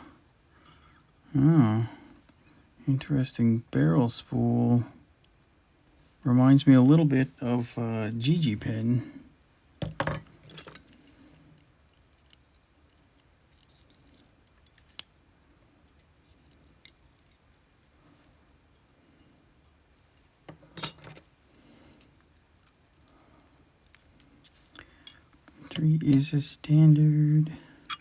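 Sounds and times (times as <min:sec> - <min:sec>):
metal parts clattering: 0:09.8 - 0:10.8, 0:20.8 - 0:21.2.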